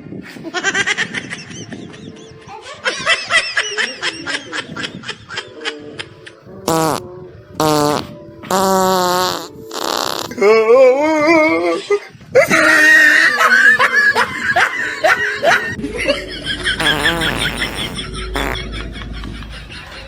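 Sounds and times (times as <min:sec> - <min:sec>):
fart noises: 0:06.7 - 0:10.4, 0:16.8 - 0:18.6.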